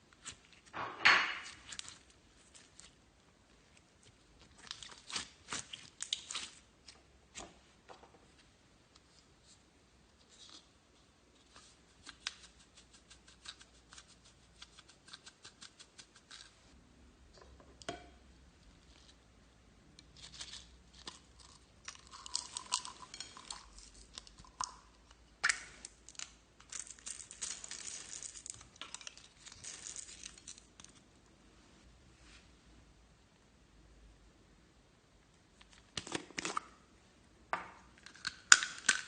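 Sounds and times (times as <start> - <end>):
slime clicking and crackling: 4.4 - 6.6.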